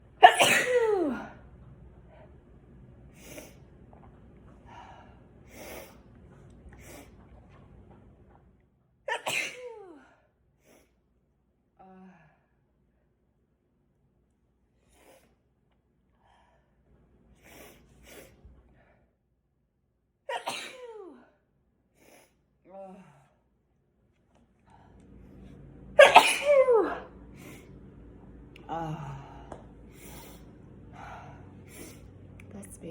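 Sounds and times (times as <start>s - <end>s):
person sneezing: 0.2s - 1.4s, 9.1s - 10.1s, 20.3s - 21.3s, 26.0s - 27.1s.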